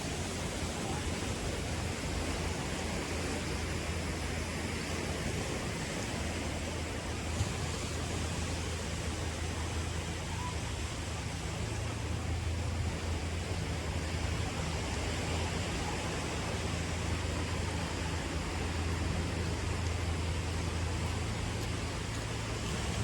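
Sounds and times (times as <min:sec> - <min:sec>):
low hum: 0:00.0 - 0:23.0
water rushing: 0:00.0 - 0:23.0.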